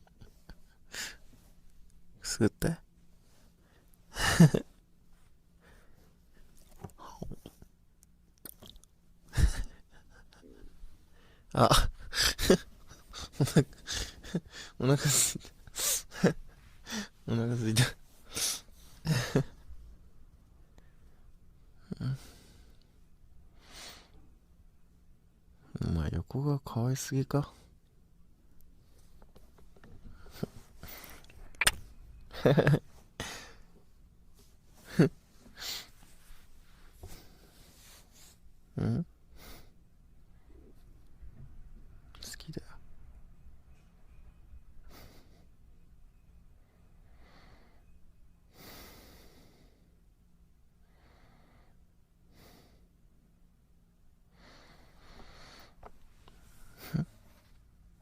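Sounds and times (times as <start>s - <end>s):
faint low hum: 0.0s - 58.0s
man breathing: 0.2s - 1.6s, 5.5s - 7.2s, 9.3s - 17.3s, 20.7s - 24.3s, 29.8s - 31.5s, 33.1s - 38.4s, 47.0s - 50.0s, 50.8s - 53.0s, 54.3s - 57.4s
man murmuring: 4.1s - 4.7s, 6.8s - 7.6s, 9.3s - 10.8s, 11.5s - 19.6s, 21.8s - 22.5s, 32.3s - 33.6s, 34.8s - 35.8s, 38.7s - 39.6s, 56.8s - 57.1s
sharp click: 31.5s - 31.9s.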